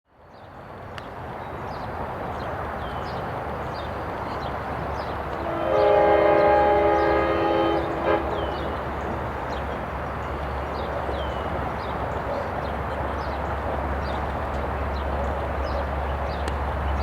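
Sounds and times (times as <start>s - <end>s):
diesel locomotive rumbling: 0.6s - 17.0s
train horn chord: 5.3s - 9.2s.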